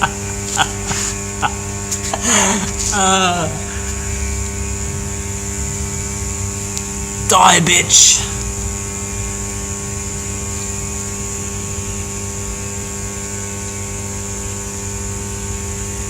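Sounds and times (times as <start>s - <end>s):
transformer humming: 0.0s - 12.5s
high electrical whine: 0.0s - 16.0s.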